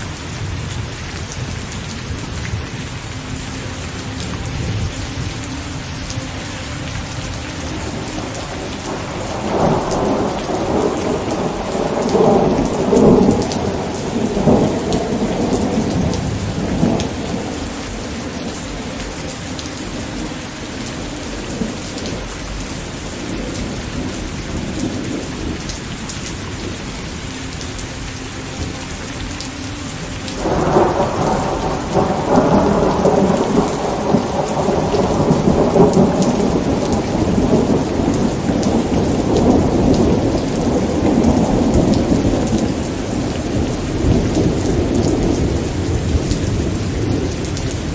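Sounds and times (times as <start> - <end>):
steady rain falling: 0.0 - 47.9
rolling thunder: 7.8 - 19.2, 30.4 - 47.9.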